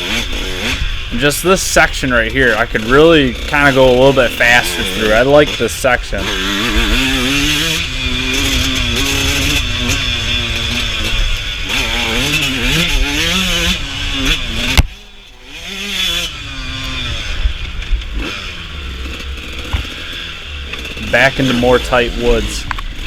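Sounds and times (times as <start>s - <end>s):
dirt bike engine revving: 0.0s - 23.0s.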